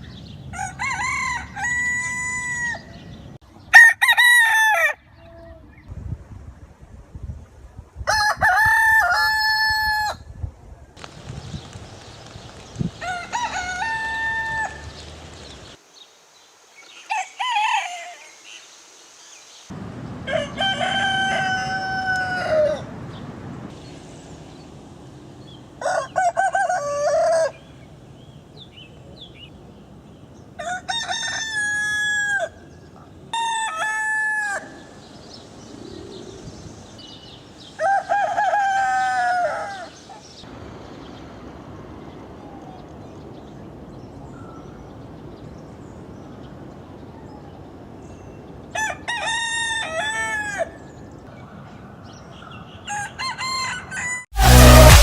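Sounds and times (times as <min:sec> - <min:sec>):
roosters crowing: 0:00.5 - 0:05.2, 0:08.1 - 0:10.2, 0:12.9 - 0:15.8, 0:17.0 - 0:18.3, 0:20.2 - 0:23.1, 0:25.8 - 0:27.8, 0:30.6 - 0:32.7, 0:33.4 - 0:35.0, 0:37.6 - 0:40.2, 0:48.8 - 0:51.0, 0:52.8 - 0:55.0.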